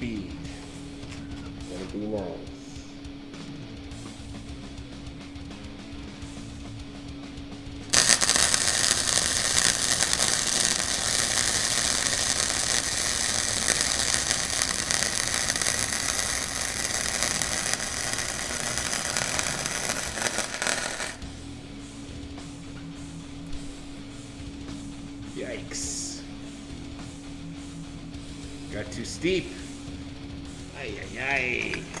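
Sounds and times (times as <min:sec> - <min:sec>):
welding arc crackling: 0:03.0 - 0:26.9.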